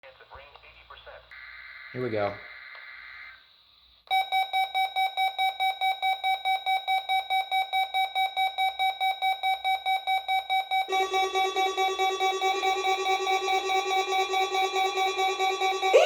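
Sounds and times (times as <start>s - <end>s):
buzzy electronic alarm beeping: 4.1s - 16.0s
lower-pitched alarm beeping: 4.1s - 16.0s.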